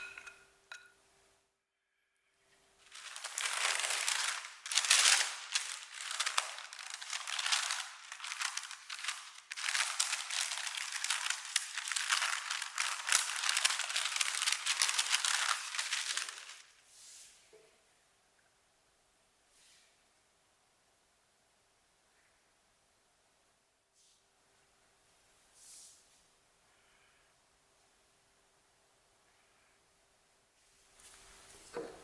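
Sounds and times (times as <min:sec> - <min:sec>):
wrapping material crinkling: 0:02.8 - 0:16.8.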